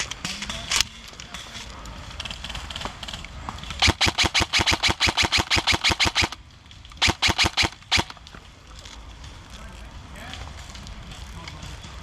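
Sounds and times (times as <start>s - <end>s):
airsoft gun full-auto burst: 3.8s - 6.4s, 7.0s - 8.2s.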